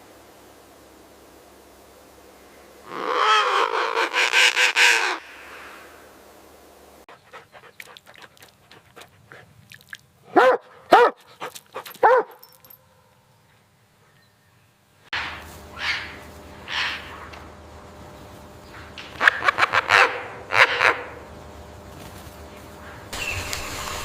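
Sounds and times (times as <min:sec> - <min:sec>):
animal calls: 0:02.8 - 0:05.2, 0:19.2 - 0:21.2.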